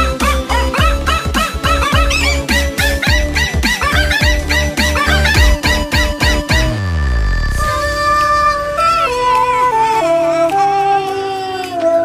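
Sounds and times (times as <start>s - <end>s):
yelp-like dog sounds: 0.0s - 6.8s
rap beat with deep drum hits: 0.0s - 10.7s.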